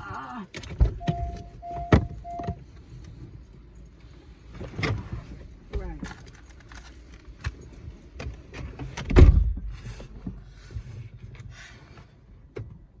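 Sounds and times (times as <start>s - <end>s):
clicks and rustles in car: 0.0s - 13.0s.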